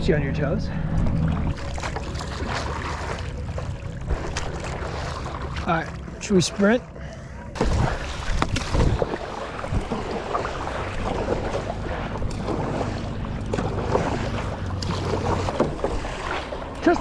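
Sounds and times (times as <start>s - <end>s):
paddle strokes splashing water: 1.1s - 17.0s
wind buffeting microphone: 7.5s - 17.0s.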